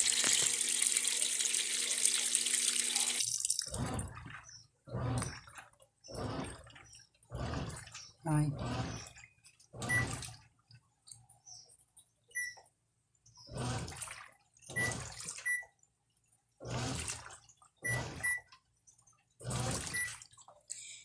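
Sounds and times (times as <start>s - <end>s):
water swishing in washing machine: 0.0s - 21.0s
low motor hum: 2.4s - 10.4s, 16.6s - 18.5s.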